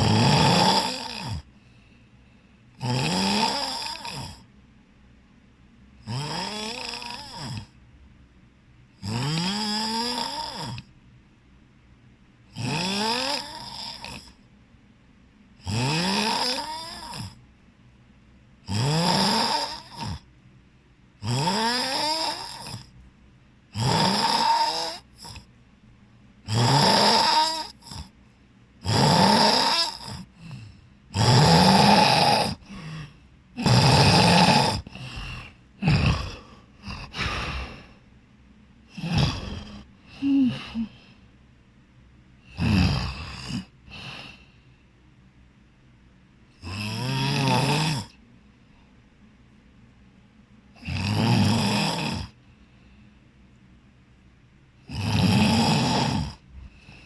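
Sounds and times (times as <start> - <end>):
person snoring heavily: 0.0 - 1.5, 2.8 - 4.5, 6.0 - 7.8, 9.0 - 10.9, 12.5 - 14.4, 15.6 - 17.4, 18.6 - 20.3, 21.2 - 22.9, 23.7 - 25.5, 26.4 - 28.2, 28.8 - 38.0, 38.8 - 41.2, 42.4 - 44.6, 46.6 - 48.2, 50.8 - 52.4, 54.8 - 57.0.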